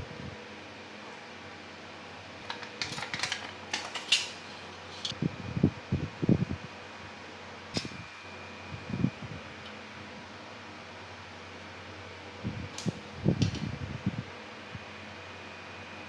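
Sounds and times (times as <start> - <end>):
fan hum: 0.0 - 16.0
small parts clicking and rustling: 2.4 - 5.1.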